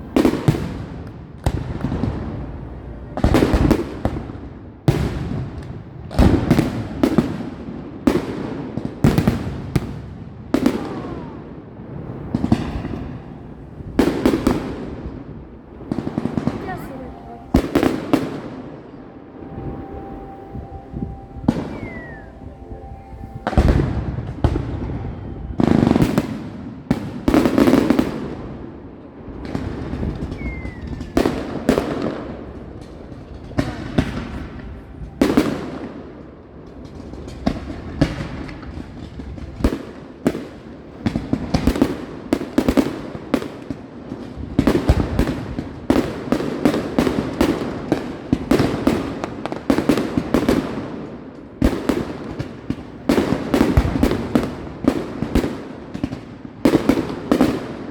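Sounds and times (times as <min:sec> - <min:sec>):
fireworks bursting with bangs: 0:00.0 - 0:57.9.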